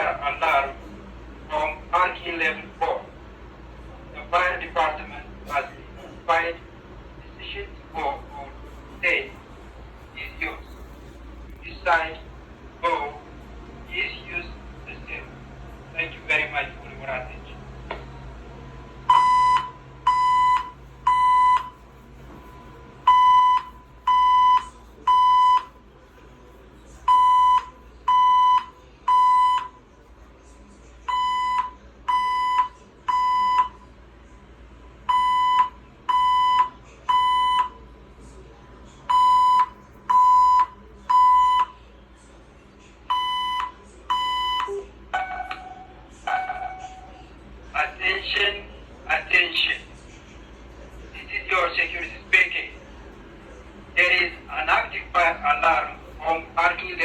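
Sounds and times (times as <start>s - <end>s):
fire alarm beeps: 19.0s - 21.8s, 22.4s - 25.8s, 27.0s - 29.8s, 31.1s - 33.8s, 35.1s - 37.8s, 39.1s - 41.8s, 43.1s - 45.6s
lower alarm tone: 22.4s - 25.7s.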